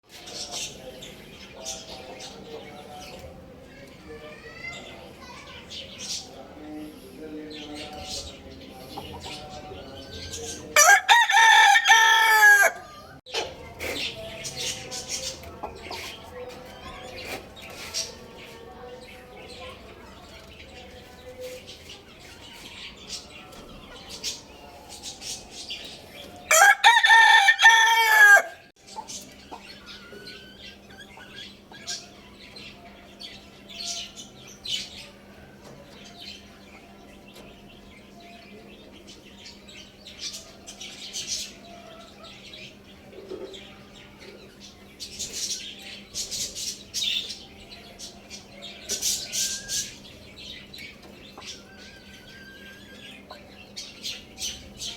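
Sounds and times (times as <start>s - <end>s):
birds chirping and clucking: 0.0s - 54.9s
rooster crowing: 10.8s - 13.2s, 26.5s - 28.7s.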